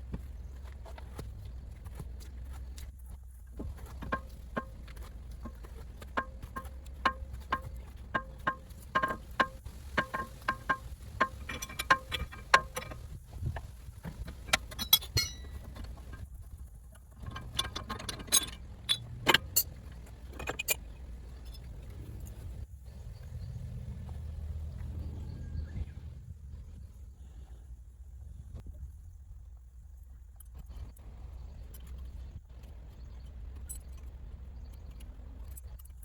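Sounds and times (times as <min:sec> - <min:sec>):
metal striking metal: 0:14.7 - 0:15.6.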